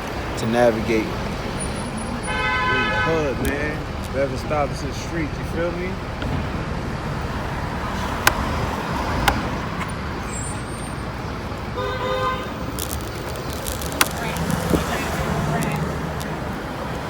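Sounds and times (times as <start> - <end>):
wind and road noise: 0.0 - 17.0
vehicle horn toot: 2.2 - 3.4, 11.8 - 12.6
sharp clicks: 12.7 - 14.8.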